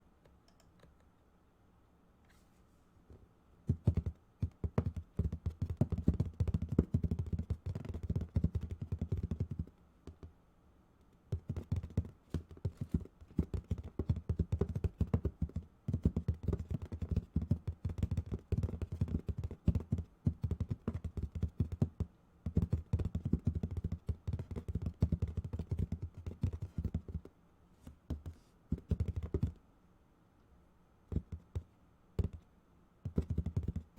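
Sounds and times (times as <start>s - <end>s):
fast keyboard typing: 3.7s - 10.3s, 11.3s - 27.3s, 28.2s - 29.6s, 32.2s - 32.4s, 33.1s - 33.9s.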